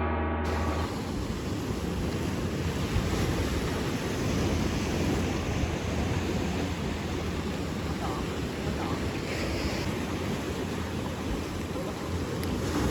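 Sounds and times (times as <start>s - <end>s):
heavy low rumble: 0.0s - 3.3s
wind buffeting microphone: 0.0s - 12.9s
surf: 0.5s - 12.9s.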